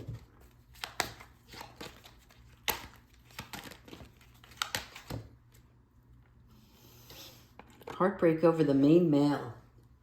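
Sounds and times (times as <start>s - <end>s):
cards rustling: 0.0s - 5.7s
cards snapping together: 0.7s - 5.3s.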